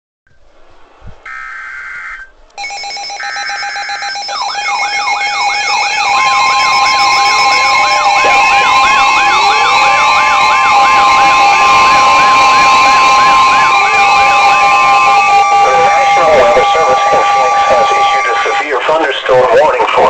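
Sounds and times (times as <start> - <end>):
screeching data burst: 1.3 - 19.4
sirens wailing: 1.3 - 20.0
steady beeping tones: 1.3 - 20.0.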